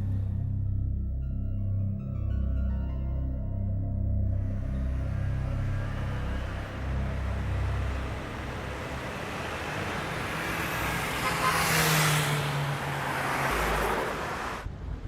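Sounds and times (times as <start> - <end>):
road traffic: 0.0 - 0.5, 4.3 - 15.0
low music: 0.0 - 10.7
car passing close: 4.4 - 14.7.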